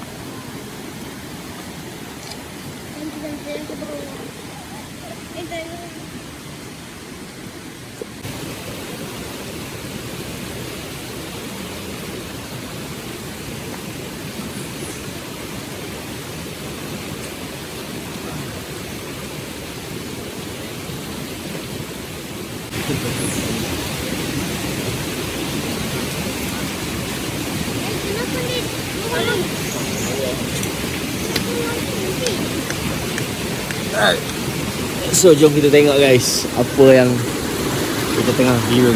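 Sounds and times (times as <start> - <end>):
steady rushing noise: 22.0 - 38.9.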